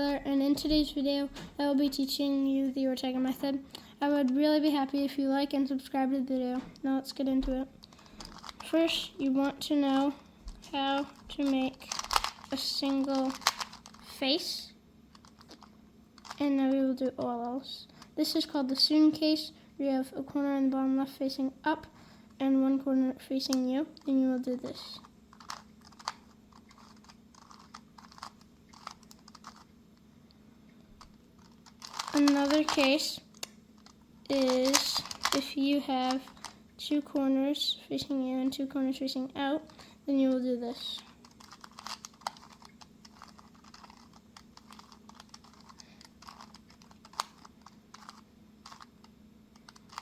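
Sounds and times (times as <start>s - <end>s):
faint steady hum: 0.0s - 50.0s
puzzle cube plastic clicks: 6.7s - 14.2s, 15.1s - 18.9s, 23.4s - 37.3s, 38.9s - 50.0s.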